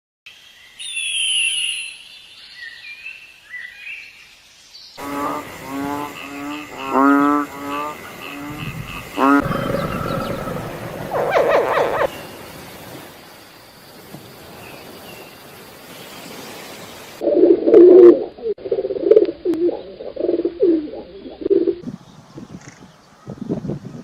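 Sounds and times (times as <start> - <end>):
bird calling in low repeated notes: 5.0 - 12.1.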